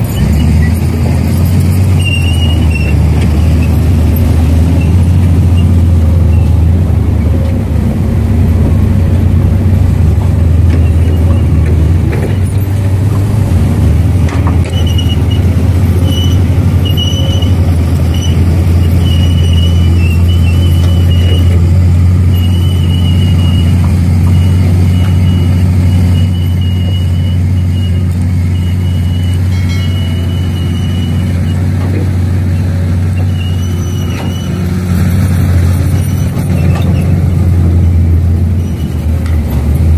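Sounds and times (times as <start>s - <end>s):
excavator engine drone: 0.0s - 39.9s
thin high squeal: 1.4s - 3.8s, 14.7s - 21.5s, 22.3s - 31.7s, 33.2s - 34.6s.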